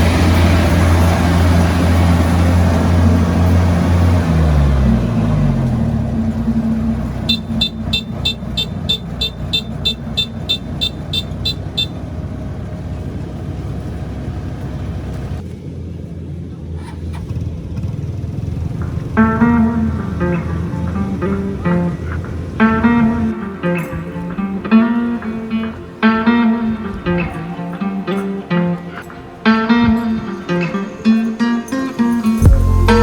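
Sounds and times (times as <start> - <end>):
guitar music: 0.0 - 13.0, 18.8 - 33.0
vehicle engine running: 0.0 - 30.7, 32.3 - 33.0
high electronic beeps: 7.3 - 12.0.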